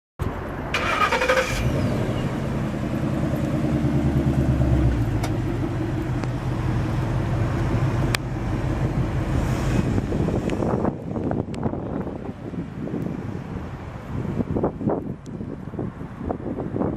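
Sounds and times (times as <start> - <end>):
car engine idling: 0.7 - 12.1.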